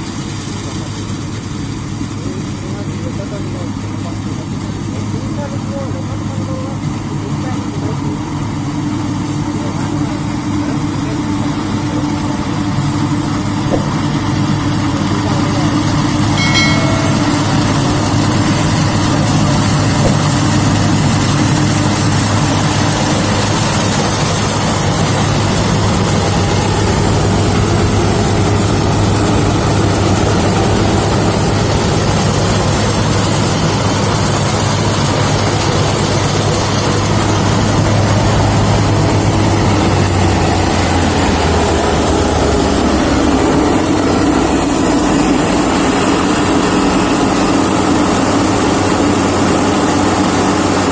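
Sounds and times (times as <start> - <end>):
harvester engine droning: 0.0 - 50.9.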